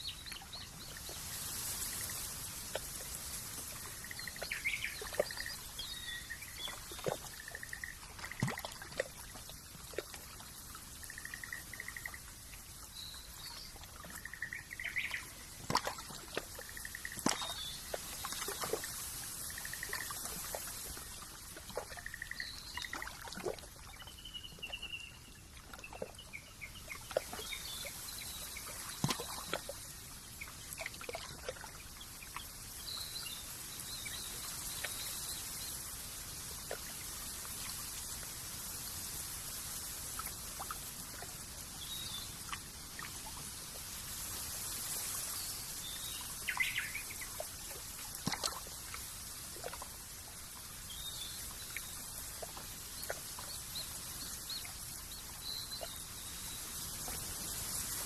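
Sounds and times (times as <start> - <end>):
water trickling: 0.0 - 35.7
sharp drips and ticks: 0.2 - 23.9.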